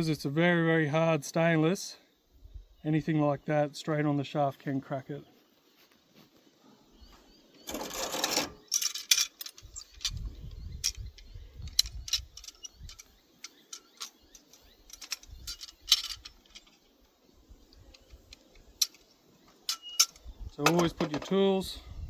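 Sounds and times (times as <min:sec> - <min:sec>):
metal scraping: 0:07.6 - 0:11.0
metal tools clinking: 0:07.6 - 0:17.1, 0:17.8 - 0:21.5.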